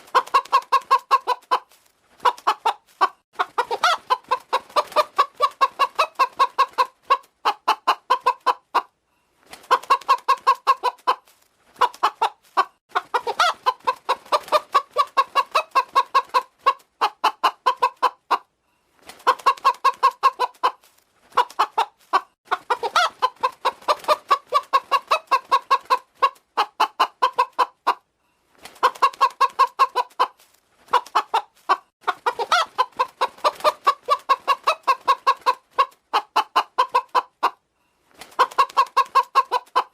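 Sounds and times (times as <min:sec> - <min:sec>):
hen clucking: 0:00.0 - 0:09.0, 0:09.6 - 0:18.5, 0:19.2 - 0:28.1, 0:28.7 - 0:37.6, 0:38.2 - 0:39.9.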